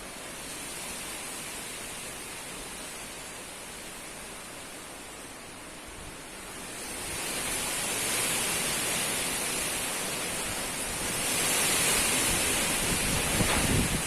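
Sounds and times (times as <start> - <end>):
strong gusting wind: 0.0 - 14.0
wind buffeting microphone: 6.9 - 14.0.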